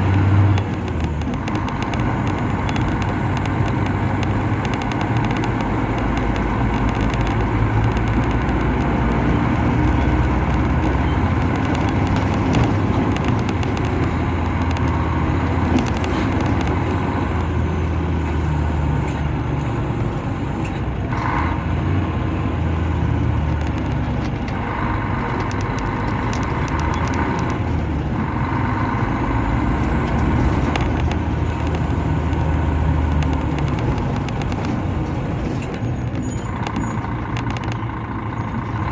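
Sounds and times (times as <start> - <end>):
high whine: 0.0 - 18.2
bus diesel engine droning: 0.0 - 38.9.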